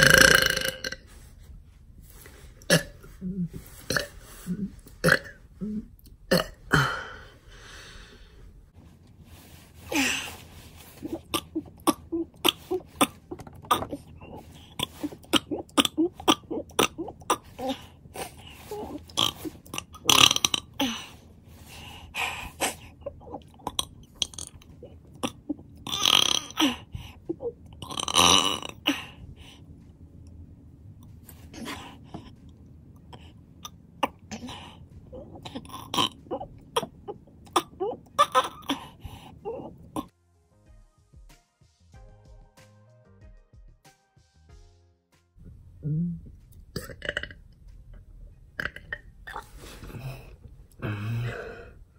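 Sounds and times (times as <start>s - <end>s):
person burping: 0.0s - 1.0s, 2.7s - 7.3s, 11.0s - 17.9s, 18.7s - 21.0s, 23.1s - 29.0s, 33.6s - 40.1s, 45.8s - 47.4s, 48.6s - 51.8s.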